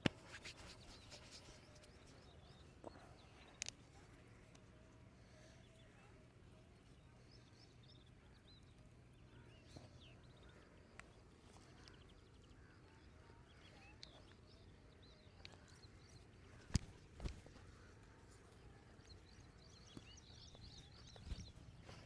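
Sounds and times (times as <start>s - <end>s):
distant bird chirps: 7.1s - 22.0s.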